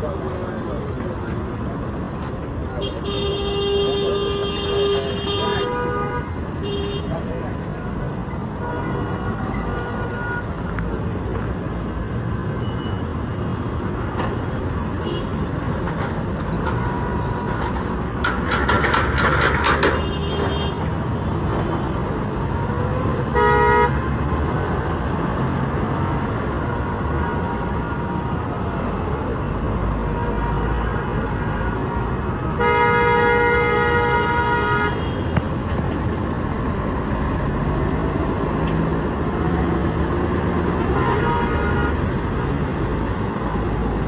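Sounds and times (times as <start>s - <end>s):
road traffic: 0.0s - 44.0s
vehicle rattling: 15.6s - 22.8s, 35.2s - 41.1s
car horn toot: 23.4s - 24.0s, 32.5s - 35.3s.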